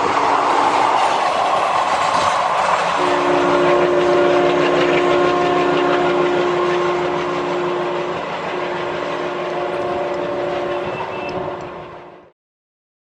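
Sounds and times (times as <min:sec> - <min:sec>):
moving train running noise: 0:00.0 - 0:12.3
two-tone locomotive horn: 0:03.0 - 0:12.3.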